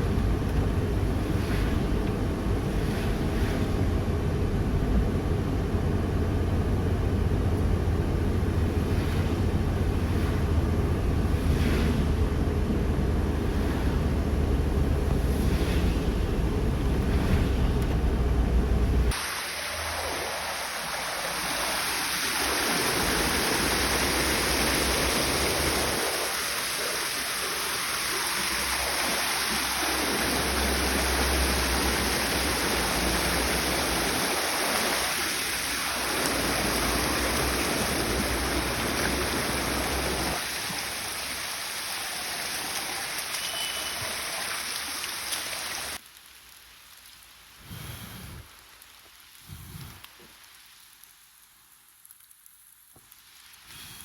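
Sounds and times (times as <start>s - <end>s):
wind rumble on microphone: 0.0s - 19.2s
rushing water: 19.1s - 46.1s.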